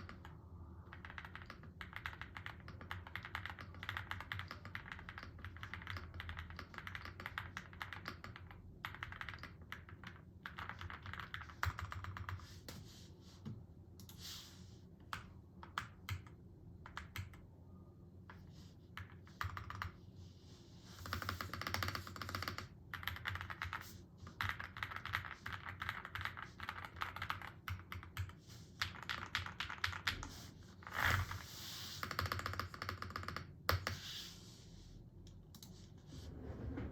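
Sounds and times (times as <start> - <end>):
mechanical keyboard typing: 0.0 - 12.5, 15.1 - 17.4, 19.0 - 20.0, 21.0 - 30.4, 32.0 - 34.0.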